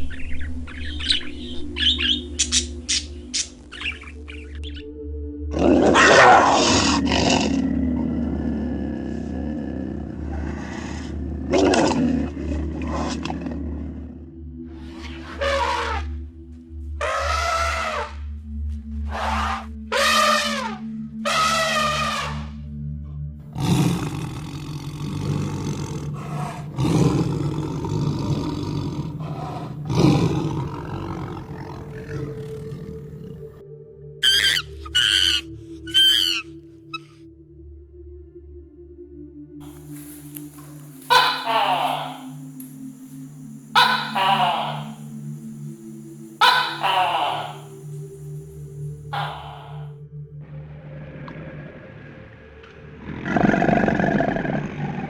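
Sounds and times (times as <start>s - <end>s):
large animal roaring: 5.5s - 16.2s, 19.1s - 22.6s, 23.5s - 33.6s, 39.6s - 42.8s, 43.7s - 45.4s, 46.4s - 48.4s, 49.1s - 55.0s.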